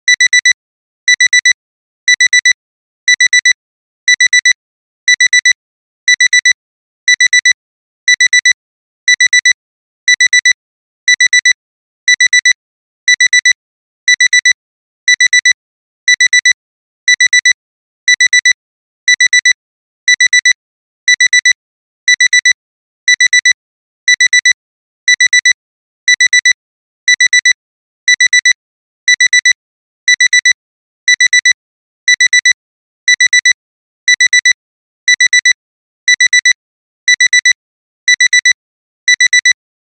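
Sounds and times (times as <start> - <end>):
alarm clock double beeps: 36.1 - 39.6.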